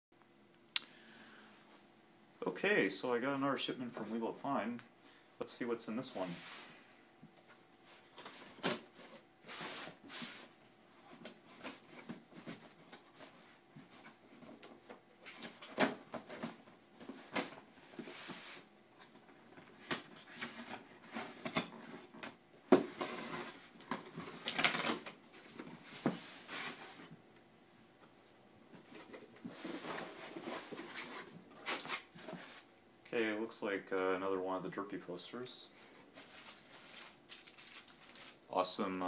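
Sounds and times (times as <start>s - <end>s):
packaging rustling and crinkling: 7.9s - 27.1s, 36.0s - 39.0s.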